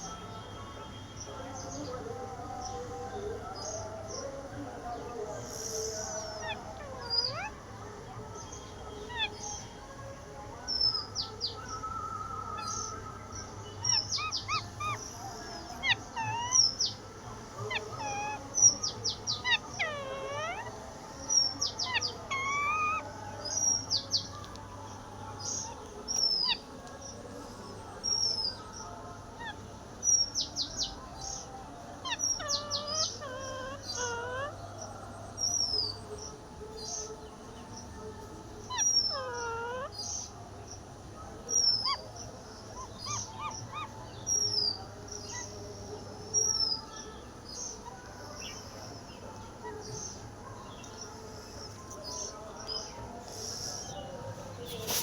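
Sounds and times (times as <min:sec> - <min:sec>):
parrots chirping and whistling: 0:15.7 - 0:16.9, 0:17.7 - 0:20.7, 0:21.9 - 0:23.0, 0:32.0 - 0:34.5, 0:38.7 - 0:39.9.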